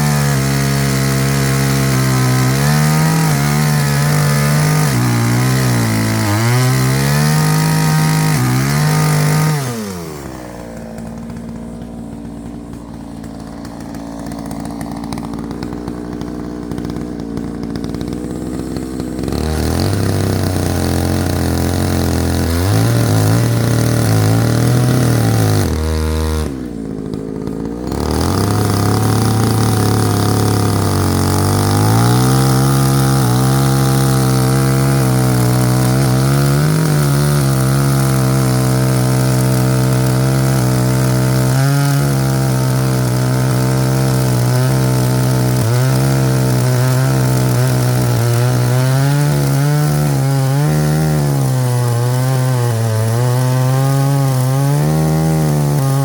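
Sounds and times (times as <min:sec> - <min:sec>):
chainsaw cutting wood: 0:00.0 - 0:56.0.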